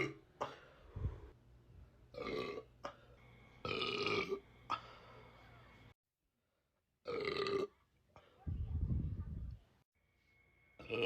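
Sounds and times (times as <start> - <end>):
woman belching: 2.2 - 2.7, 3.7 - 4.4, 7.0 - 7.8.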